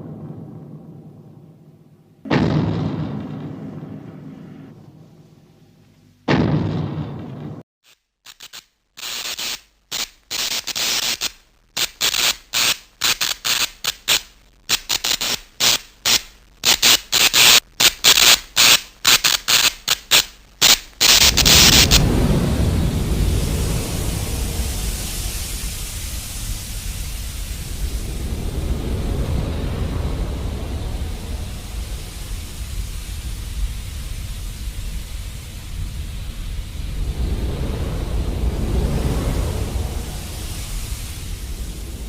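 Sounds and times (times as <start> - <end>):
deep rumbling noise: 0.0 - 6.2, 21.1 - 42.0
hissing static-like noise bursts: 7.8 - 42.0.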